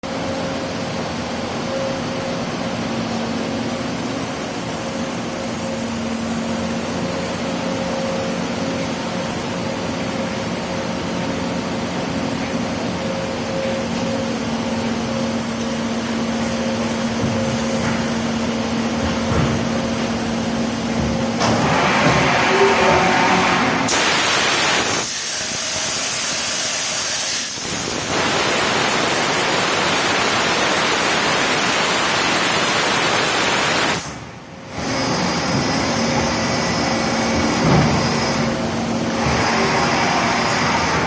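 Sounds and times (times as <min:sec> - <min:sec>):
machining center mechanical hum: 0:00.0 - 0:41.0
loud hissing rush: 0:21.5 - 0:34.3.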